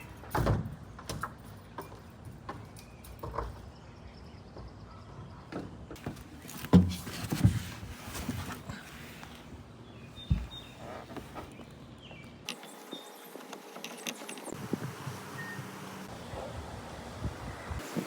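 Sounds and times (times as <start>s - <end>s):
knocks and thumps on van roof: 6.1s - 7.8s, 10.3s - 10.6s.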